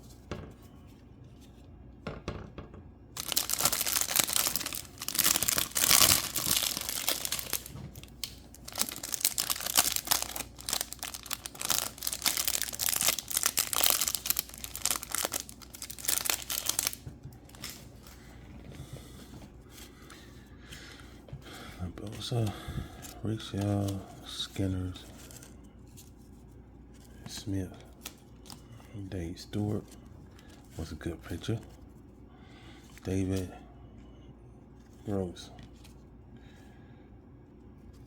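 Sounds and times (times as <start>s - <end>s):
wrapper tearing and crinkling: 3.2s - 17.8s.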